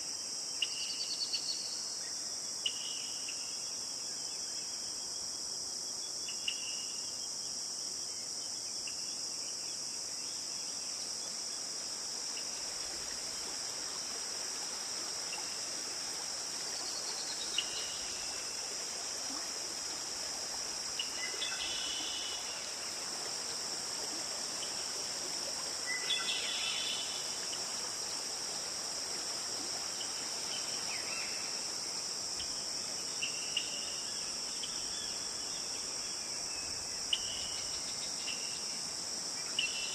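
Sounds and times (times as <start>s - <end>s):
insect chorus: 0.0s - 39.9s.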